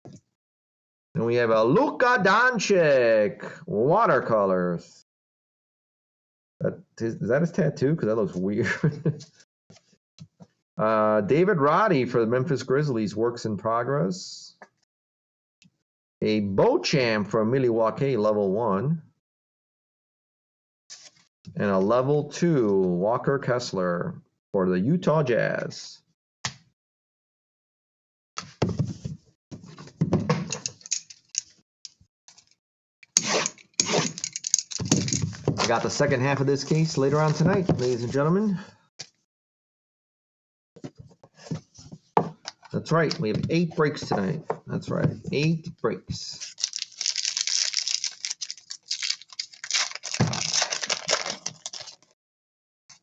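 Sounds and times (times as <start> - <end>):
foil wrapper crinkling and tearing: 33.8 - 38.1, 46.4 - 52.2
cards rustling: 33.8 - 38.2, 46.4 - 52.1
cards handled on a table: 34.9 - 38.2.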